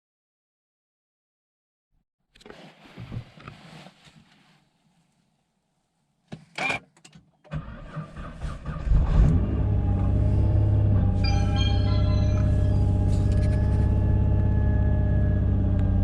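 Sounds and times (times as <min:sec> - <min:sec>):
car engine starting and idling: 0:07.4 - 0:16.0.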